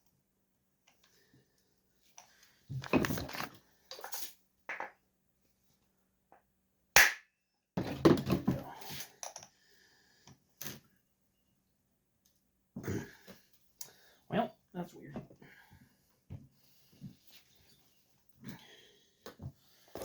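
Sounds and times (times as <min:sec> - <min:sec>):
tools knocking and rattling on workbench: 0:07.8 - 0:09.5.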